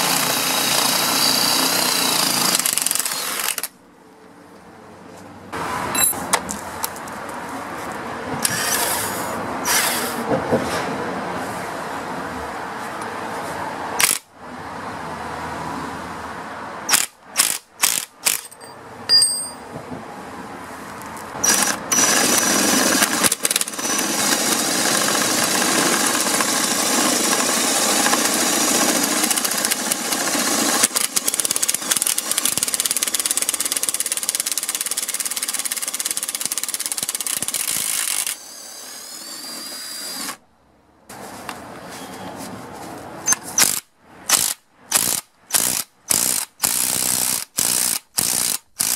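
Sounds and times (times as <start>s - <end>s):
impact wrench hammering: 16.9s - 19.8s.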